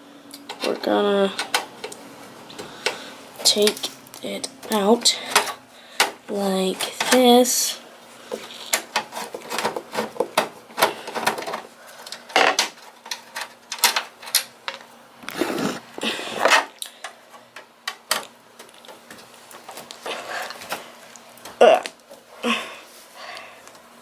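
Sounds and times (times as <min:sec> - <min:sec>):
plastic and metal clicks and scraping: 0:00.4 - 0:07.5, 0:08.3 - 0:15.8.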